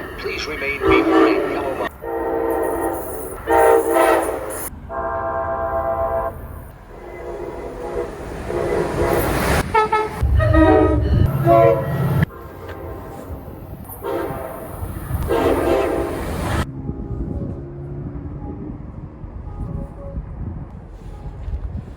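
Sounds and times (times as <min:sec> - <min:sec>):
train horn blasts: 0:00.4 - 0:18.7
deep rumble: 0:10.1 - 0:15.3.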